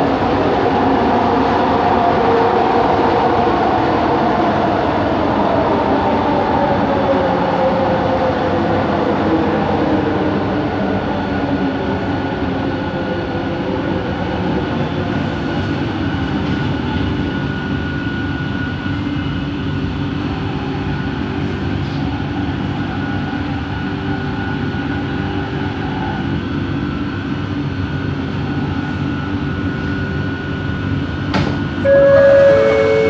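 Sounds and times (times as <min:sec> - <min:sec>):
train running with rumble and whine: 0:00.0 - 0:33.0
two-note falling chime: 0:31.9 - 0:33.0.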